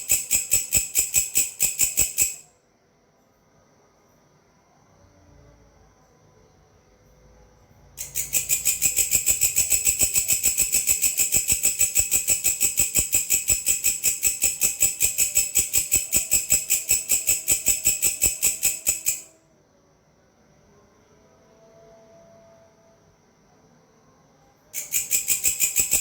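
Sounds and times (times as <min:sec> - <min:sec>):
grasshopper chirping: 0:00.0 - 0:02.5, 0:08.0 - 0:19.3, 0:24.8 - 0:26.0.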